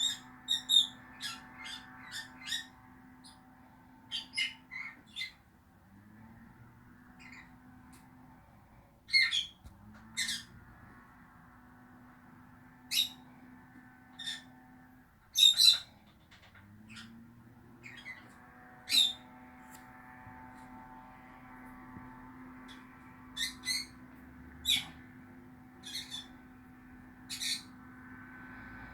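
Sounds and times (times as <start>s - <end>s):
birds squawking: 0.0s - 5.4s, 7.1s - 7.7s, 9.1s - 10.6s, 12.8s - 13.3s, 14.1s - 14.6s, 15.3s - 19.4s, 22.3s - 27.8s.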